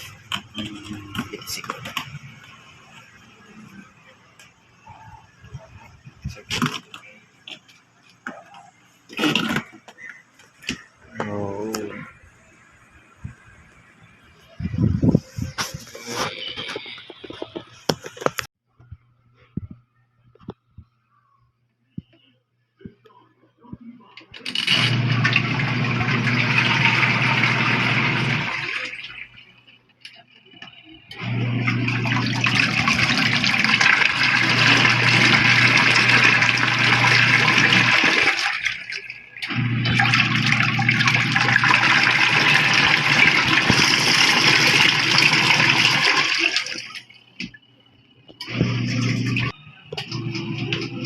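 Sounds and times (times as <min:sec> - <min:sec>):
washing machine motor hum: 0:00.0 - 0:12.1, 0:24.4 - 0:51.0
water churning: 0:31.2 - 0:47.4.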